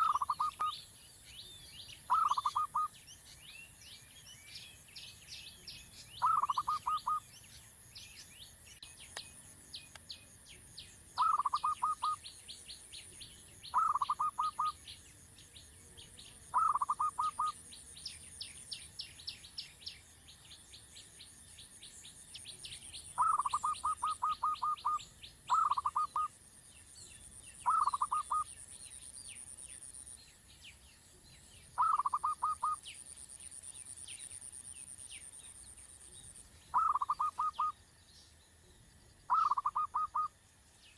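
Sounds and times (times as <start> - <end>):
bird calling in pulsed notes: 0.0 - 0.8, 2.0 - 3.0, 6.2 - 7.3, 11.2 - 12.3, 13.6 - 14.9, 16.5 - 17.6, 23.1 - 26.4, 27.6 - 28.6, 31.8 - 32.9, 36.7 - 37.8, 39.3 - 40.4
high chirping of birds: 0.0 - 40.9.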